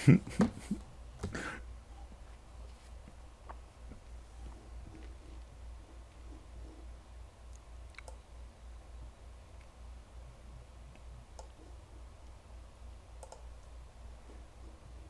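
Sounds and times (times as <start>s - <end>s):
steady low hum: 0.0s - 15.0s
faint sharp clicks: 7.5s - 8.2s, 13.2s - 13.7s.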